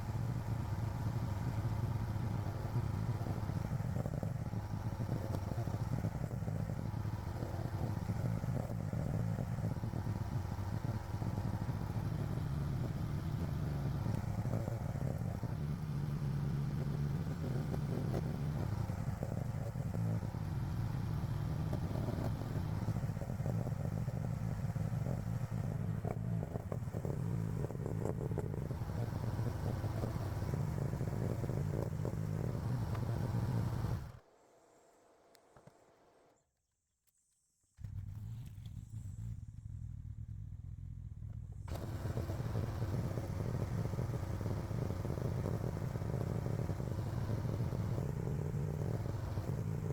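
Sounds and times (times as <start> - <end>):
excavator engine running: 41.6 - 49.9.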